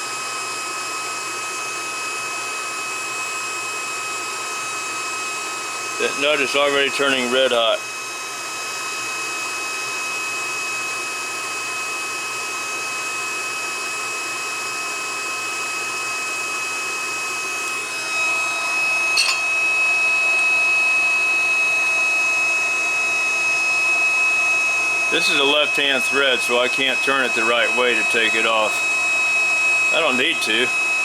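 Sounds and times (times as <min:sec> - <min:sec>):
induction heater cooling fan: 0:01.3 - 0:31.0
high-pitched whines: 0:18.2 - 0:20.6, 0:25.1 - 0:31.0.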